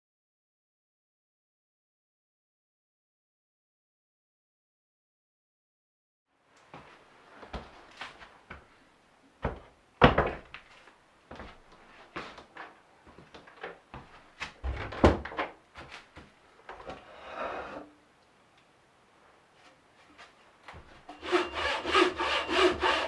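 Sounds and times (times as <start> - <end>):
short scraping rub: 17.0 - 17.9.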